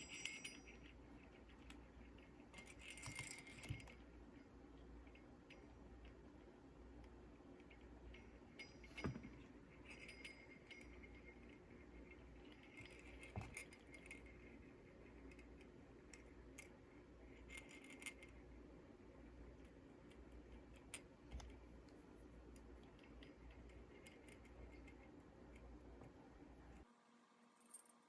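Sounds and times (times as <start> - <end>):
small metal parts clinking: 0.0 - 4.1, 7.7 - 18.6.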